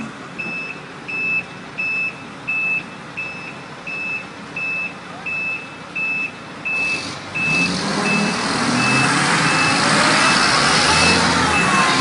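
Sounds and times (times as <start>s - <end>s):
heavy diesel engine: 0.0s - 12.0s
truck back-up alarm beeping: 0.0s - 12.0s.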